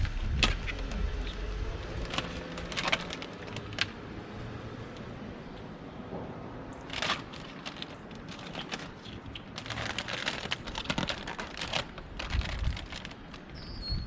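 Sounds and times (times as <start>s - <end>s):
tape peeling with crackles: 0.0s - 4.2s, 6.8s - 13.6s.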